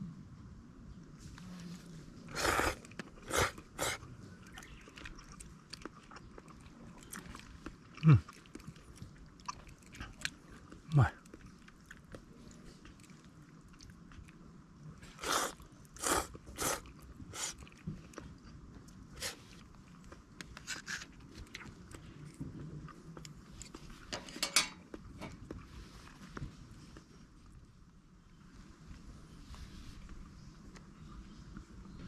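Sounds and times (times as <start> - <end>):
person chewing crunchy food: 2.3 - 27.2.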